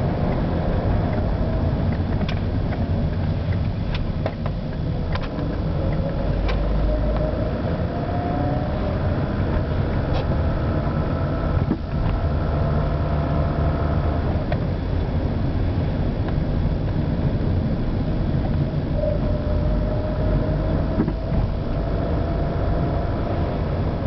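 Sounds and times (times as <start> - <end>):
car engine low drone: 0.0 - 24.0.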